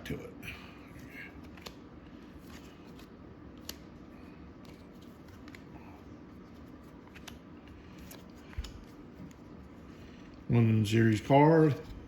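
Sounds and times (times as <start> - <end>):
low room hum: 0.0 - 12.0
trading cards being flipped: 1.3 - 10.4
cards snapping clicks: 3.6 - 3.9.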